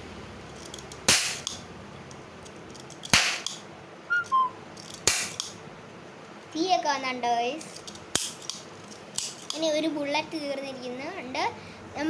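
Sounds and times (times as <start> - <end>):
cap gun bangs: 1.1 - 1.6, 3.1 - 3.6, 5.0 - 5.6
short whistle-like notes: 4.1 - 4.6.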